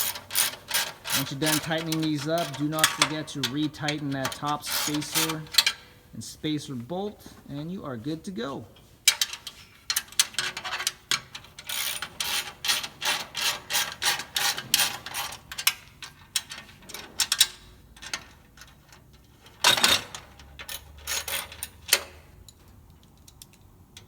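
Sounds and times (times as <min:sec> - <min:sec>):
ratchet wrench clicking: 0:00.0 - 0:05.8.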